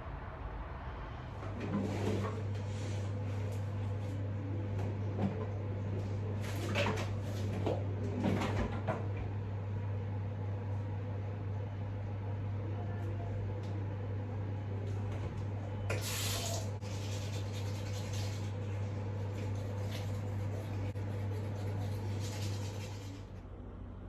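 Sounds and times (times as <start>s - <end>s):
low hum: 0.0s - 6.3s.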